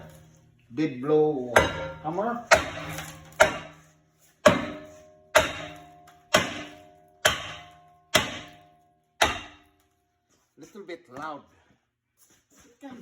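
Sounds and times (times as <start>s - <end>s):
hammer striking ringing metal rotor: 1.5s - 8.6s.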